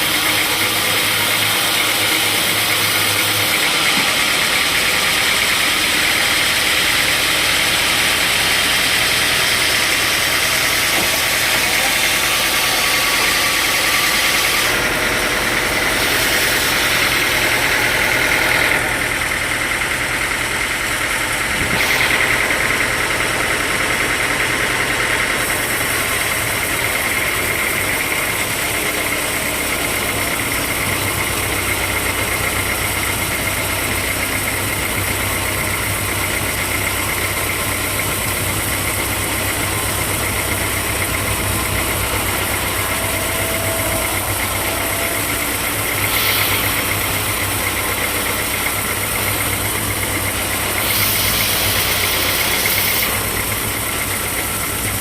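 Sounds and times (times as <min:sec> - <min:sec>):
sawmill machinery drone: 0:00.0 - 0:55.0
hissing surges: 0:39.7 - 0:54.0.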